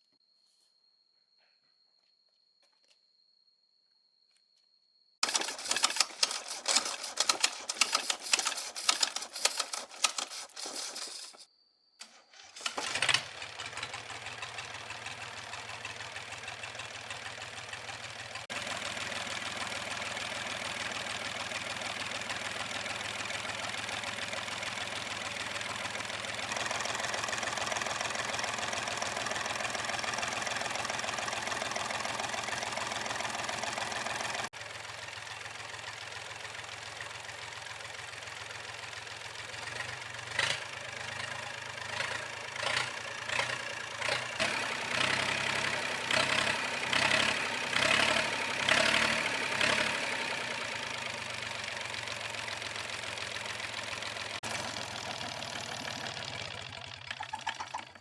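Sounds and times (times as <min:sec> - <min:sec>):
engine running with knocking beat: 0:12.8 - 0:58.0.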